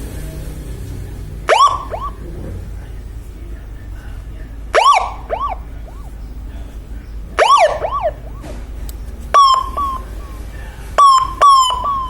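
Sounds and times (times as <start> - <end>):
electronic siren chirp with echo: 1.5 - 2.2, 4.8 - 6.4, 7.4 - 8.6, 9.4 - 12.0.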